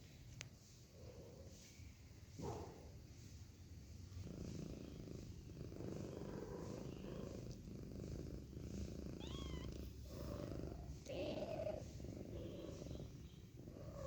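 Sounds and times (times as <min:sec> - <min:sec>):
cat purring: 0:03.8 - 0:14.0
cat mewing: 0:09.2 - 0:10.3, 0:11.0 - 0:12.9.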